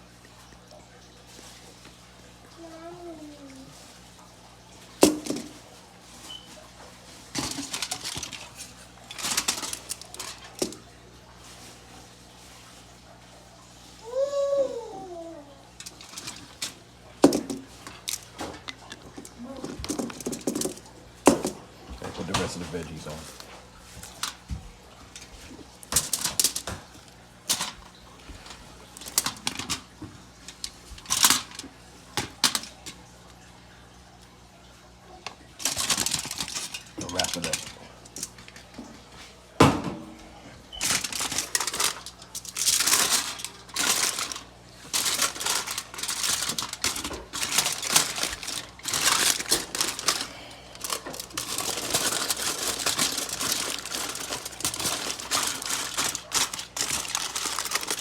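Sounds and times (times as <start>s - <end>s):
foil crinkling: 4.9s - 12.9s, 15.8s - 33.0s, 35.5s - 38.8s, 40.8s - 58.0s
dishes clinking and rattling: 7.4s - 10.8s, 15.8s - 22.6s, 35.6s - 38.6s, 40.7s - 58.0s.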